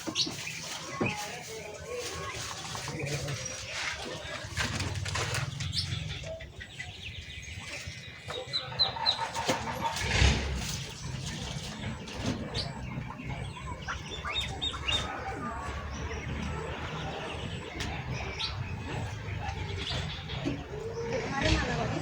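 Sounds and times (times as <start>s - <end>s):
wing flutters and rustling: 0.0s - 6.2s
songbirds chirping: 0.0s - 22.0s.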